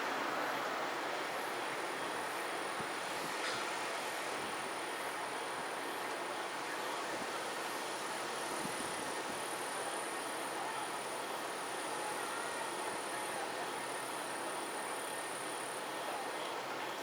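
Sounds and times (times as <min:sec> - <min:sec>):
steady rushing background noise: 0:00.0 - 0:17.0.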